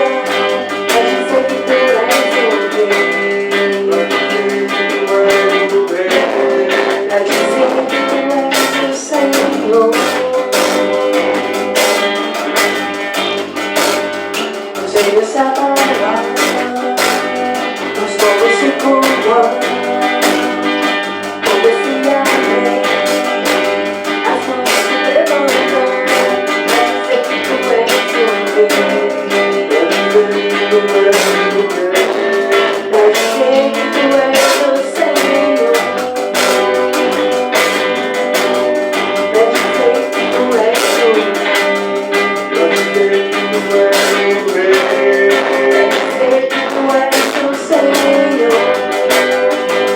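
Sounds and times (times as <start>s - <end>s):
band playing instrumental: 0.0s - 49.9s
guitar: 0.0s - 49.9s.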